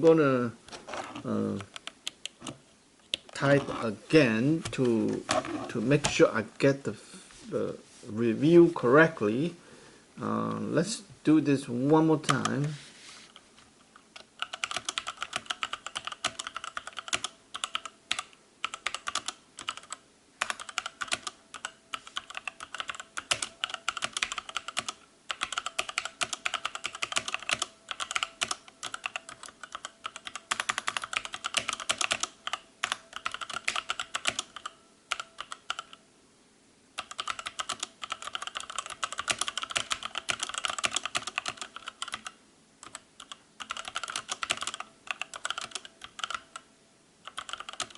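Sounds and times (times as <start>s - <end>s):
mechanical keyboard typing: 12.2s - 12.7s, 14.2s - 36.0s, 37.0s - 47.9s.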